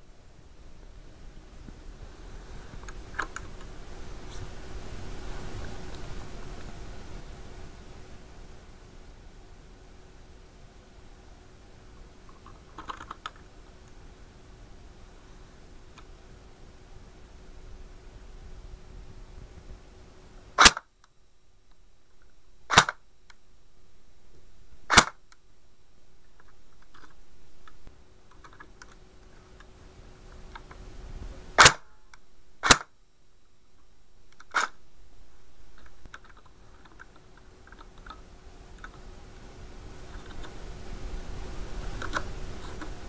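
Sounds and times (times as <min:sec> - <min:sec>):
airsoft gun shots: 0:20.6 - 0:20.9, 0:22.7 - 0:23.0, 0:24.9 - 0:25.2, 0:31.6 - 0:32.0, 0:32.6 - 0:33.0.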